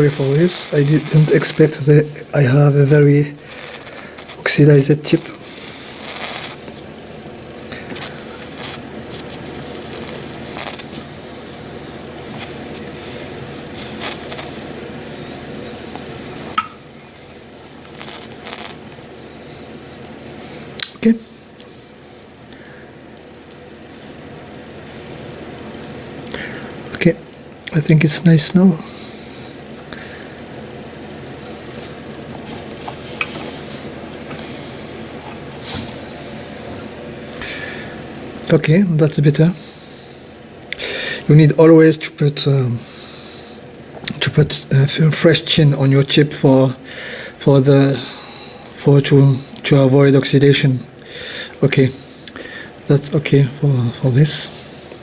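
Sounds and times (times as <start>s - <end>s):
soldering iron tip scrubbing: 0.0s - 2.0s, 2.8s - 7.3s, 7.9s - 19.7s
flux sizzling: 0.0s - 19.7s
steady background hum: 0.0s - 55.0s.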